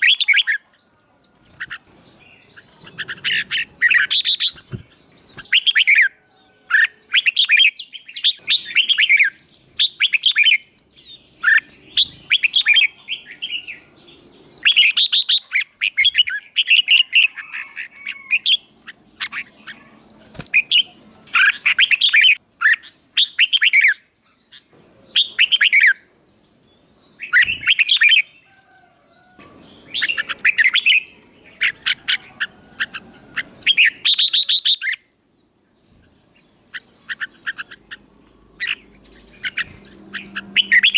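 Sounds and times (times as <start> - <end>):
songbird chirping: 0.0 - 40.9.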